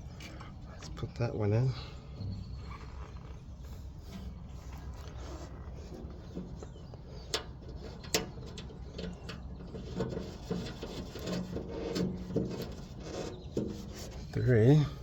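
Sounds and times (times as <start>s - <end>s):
bolt rubbing and knocking: 7.3s - 14.4s.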